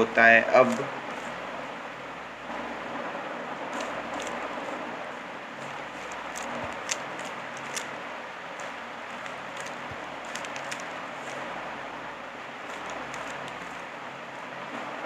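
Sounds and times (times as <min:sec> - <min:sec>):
background hiss: 0:00.0 - 0:15.0
puzzle cube plastic clicks: 0:03.8 - 0:04.5, 0:05.6 - 0:08.0, 0:08.6 - 0:11.4, 0:12.7 - 0:13.9.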